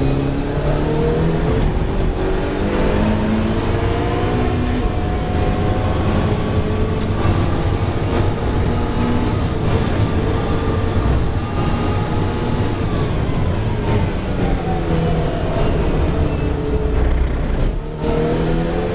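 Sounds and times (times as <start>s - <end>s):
race car engine shifting gears: 0.0s - 18.9s.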